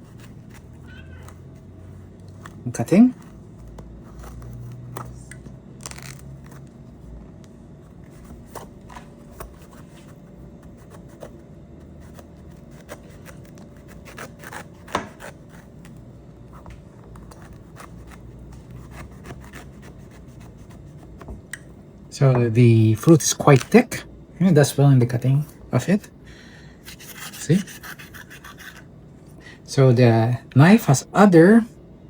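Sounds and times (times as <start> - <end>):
knife cutting citrus fruit: 10.8 - 15.8, 17.2 - 21.3, 26.8 - 28.9.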